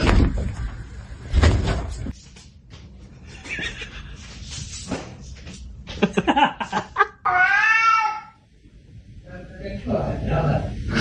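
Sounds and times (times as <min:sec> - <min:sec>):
cat meowing: 0:07.3 - 0:08.4.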